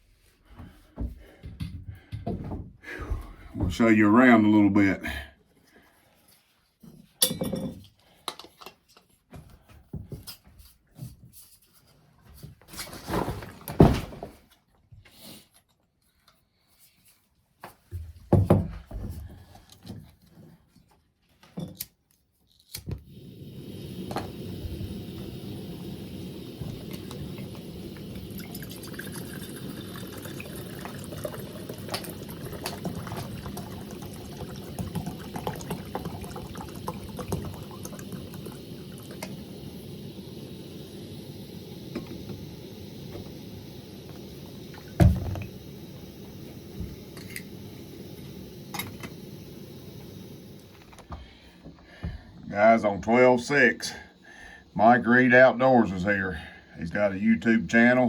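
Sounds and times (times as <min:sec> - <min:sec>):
camping stove hissing: 0:22.9 - 0:57.0.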